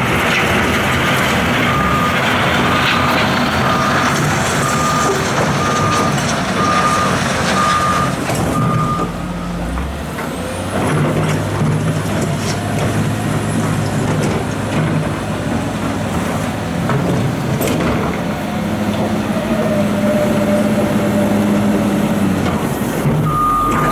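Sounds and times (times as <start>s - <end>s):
diesel machinery running: 0.0s - 23.9s
reversing alarm beeping: 1.6s - 9.7s, 23.2s - 23.9s.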